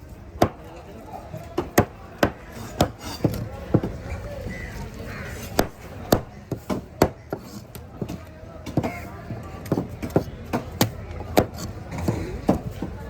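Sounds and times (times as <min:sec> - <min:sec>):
market voices: 0:00.0 - 0:13.0
knife chopping fish on wood: 0:00.4 - 0:00.6, 0:01.6 - 0:04.0, 0:05.4 - 0:13.0.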